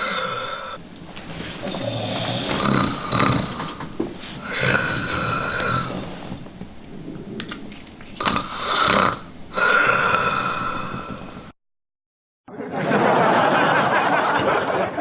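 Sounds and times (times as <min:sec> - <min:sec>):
man snoring loudly: 0:00.0 - 0:00.8, 0:01.6 - 0:06.4, 0:08.2 - 0:11.5.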